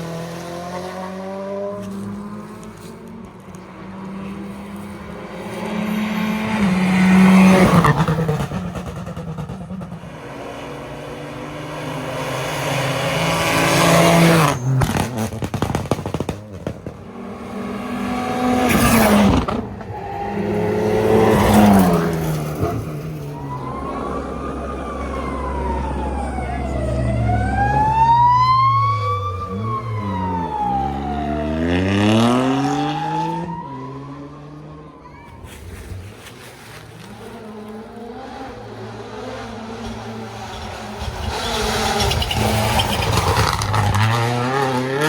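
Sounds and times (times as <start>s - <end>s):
rally car engines revving: 0.0s - 45.0s
sharp cracks and bangs: 14.7s - 17.2s.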